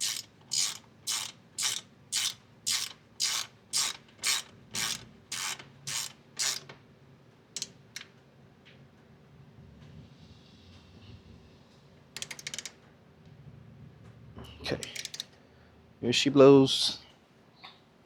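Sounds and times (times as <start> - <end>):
ratchet wrench clicking: 0.0 - 6.7, 12.2 - 12.7, 14.8 - 15.3.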